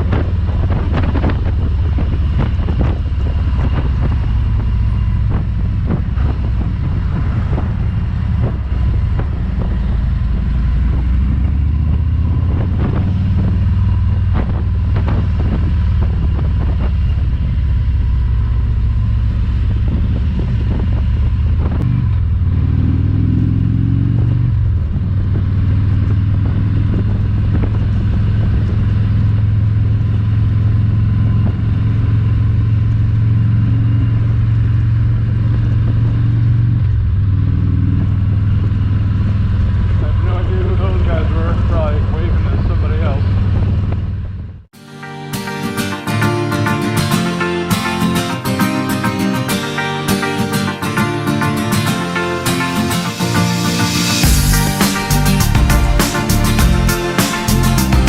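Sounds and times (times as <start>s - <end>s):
wind buffeting microphone: 0.0s - 32.6s, 33.6s - 44.7s
motorcycle engine running: 0.0s - 44.7s, 46.2s - 58.0s.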